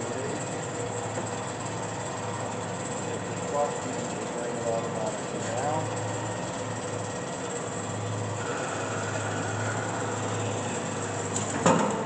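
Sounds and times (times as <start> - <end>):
band saw running with mechanical hum: 0.0 - 12.0
high steady whine: 8.0 - 11.8.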